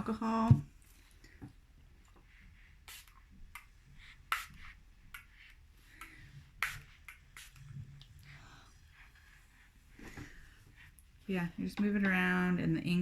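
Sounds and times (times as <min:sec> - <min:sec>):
spray bottle spritzes: 0:02.9 - 0:03.2.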